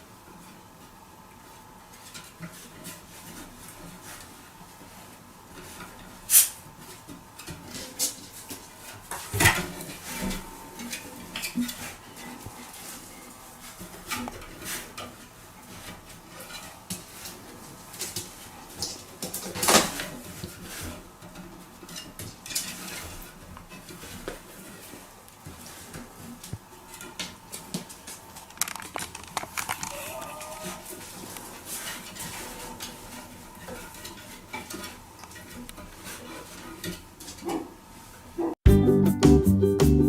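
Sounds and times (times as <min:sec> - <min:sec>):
small hard objects clinking: 0:28.4 - 0:30.8.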